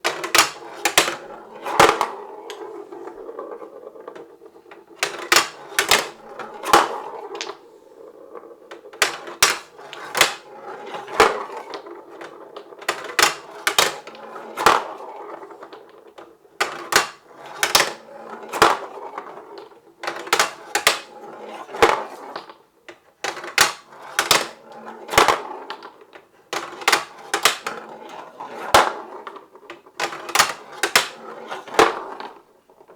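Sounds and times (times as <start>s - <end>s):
marbles rolling rumble: 0.1s - 16.5s.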